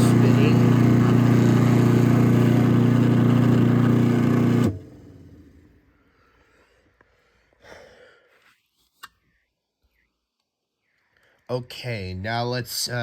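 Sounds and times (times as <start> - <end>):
garage door opener motor humming: 0.0 - 5.6.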